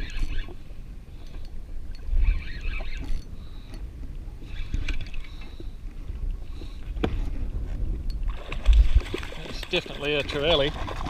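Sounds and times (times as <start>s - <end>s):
wind gusting on microphone: 0.0s - 11.0s
water slapping against hull: 2.7s - 11.0s.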